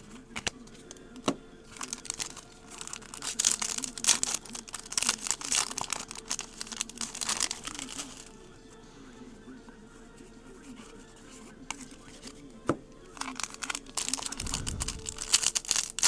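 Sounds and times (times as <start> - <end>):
foil wrapper tearing and crinkling: 1.7 - 8.3, 13.1 - 16.0.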